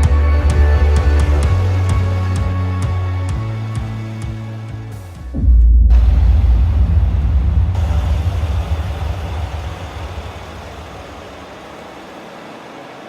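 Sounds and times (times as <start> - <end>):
car engine starting: 5.3 - 12.2.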